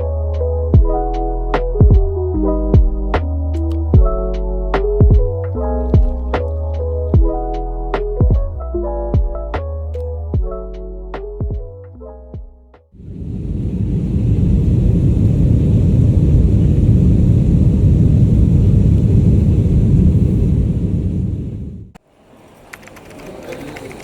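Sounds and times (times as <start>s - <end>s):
drum hits: 1.8s - 2.2s, 5.0s - 5.4s, 6.0s - 6.2s
low vehicle rumble: 13.0s - 22.0s.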